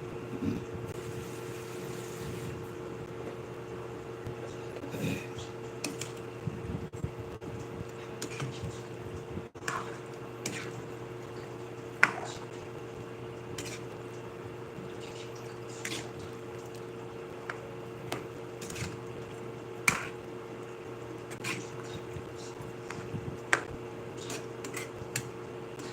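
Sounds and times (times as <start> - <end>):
electrical hum: 0.0 - 25.9.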